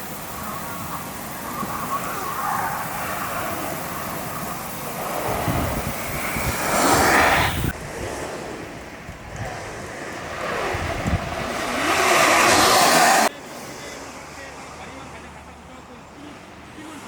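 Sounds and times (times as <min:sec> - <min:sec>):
wind rushing over microphone: 0:00.0 - 0:13.3
wheels rolling on pavement: 0:00.0 - 0:15.4.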